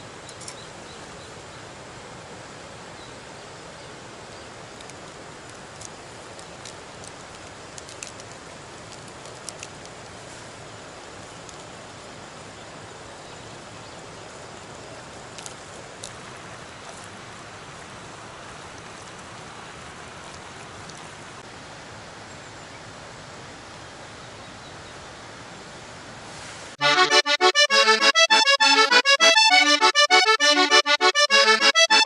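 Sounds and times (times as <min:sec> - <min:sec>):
flowing water: 0:00.0 - 0:22.2
faint clicks: 0:04.8 - 0:10.2.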